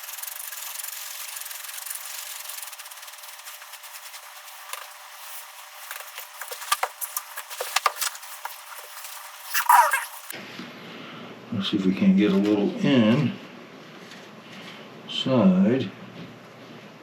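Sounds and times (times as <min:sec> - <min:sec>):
hands rubbing and scratching: 0:00.0 - 0:10.3.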